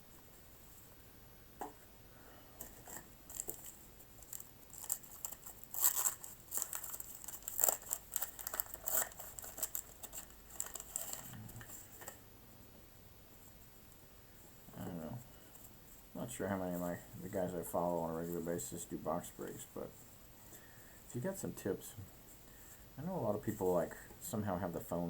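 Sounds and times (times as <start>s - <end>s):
wax paper wrapper crinkling: 2.7s - 11.3s.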